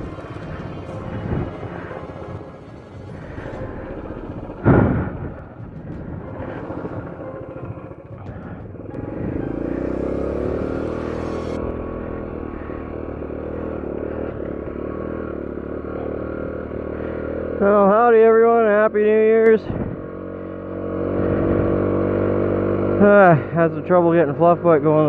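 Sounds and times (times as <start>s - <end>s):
motorcycle engine running: 0.0s - 25.0s
loud thump: 4.6s - 6.4s.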